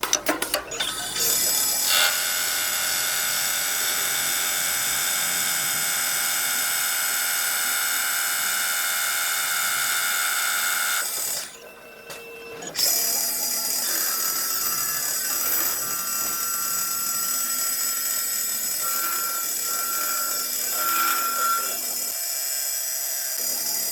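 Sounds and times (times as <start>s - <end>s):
wood lathe whining: 0.8s - 11.6s, 12.7s - 23.9s.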